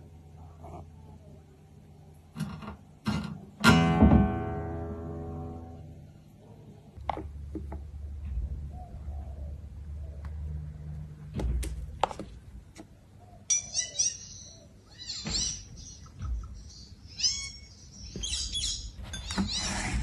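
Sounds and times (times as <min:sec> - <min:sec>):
small animal chirping: 0:13.3 - 0:20.0.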